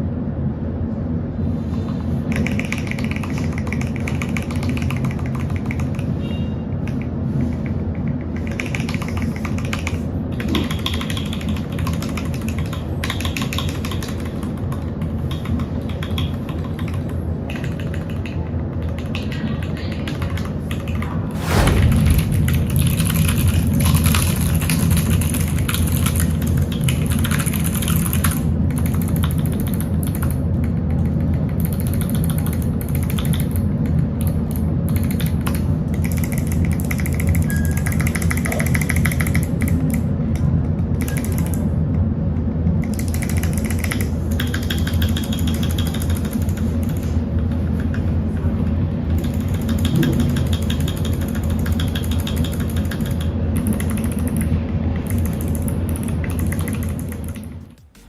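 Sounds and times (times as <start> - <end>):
steady low hum: 0.0 - 58.0
mechanical keyboard typing: 2.3 - 6.1, 7.6 - 21.0, 23.9 - 30.4, 31.0 - 33.6, 41.0 - 41.6, 42.8 - 47.0, 49.2 - 57.6.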